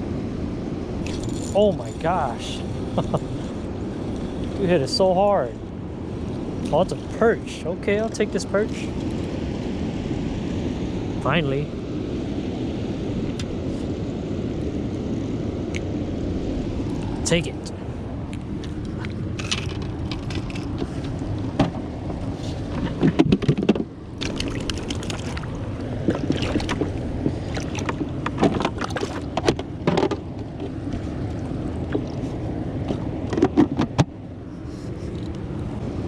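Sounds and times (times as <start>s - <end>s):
low outdoor rumble: 0.0s - 36.0s
sharp clicks and rattles: 1.0s - 2.1s, 18.6s - 21.2s.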